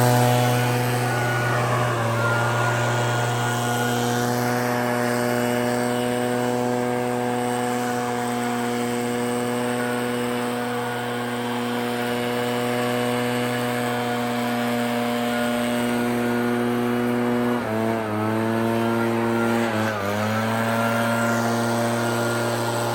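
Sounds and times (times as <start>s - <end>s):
leaf blower engine running: 0.0s - 22.9s.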